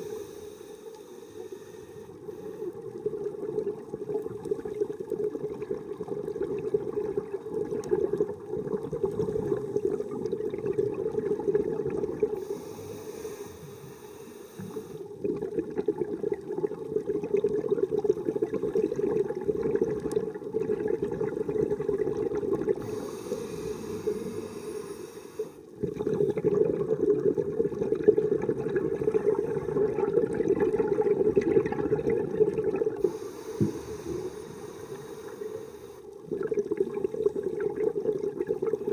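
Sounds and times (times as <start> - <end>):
bubbling exhalation underwater: 2.9 - 12.4, 15.1 - 24.4, 25.7 - 34.4, 36.2 - 38.9
regulator hissing inhalation: 12.4 - 15.0, 22.8 - 25.6, 33.0 - 36.1.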